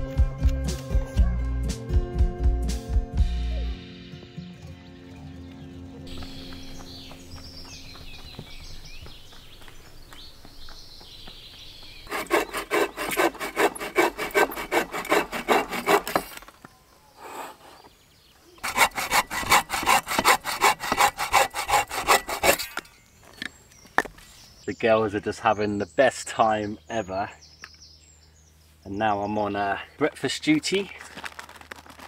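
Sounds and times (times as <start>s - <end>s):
hand saw cutting wood: 12.1s - 16.4s, 18.6s - 22.9s.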